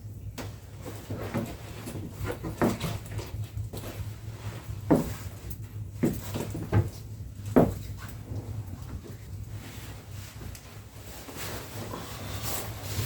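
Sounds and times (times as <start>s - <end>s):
steady low hum: 0.0s - 13.0s
knocks and thumps: 6.0s - 8.0s.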